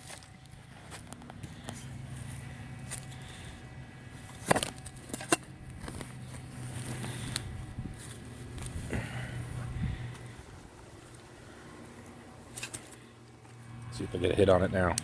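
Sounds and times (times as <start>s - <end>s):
dirt being dug and scraped: 0.0s - 15.0s
low steady hum: 0.0s - 15.0s.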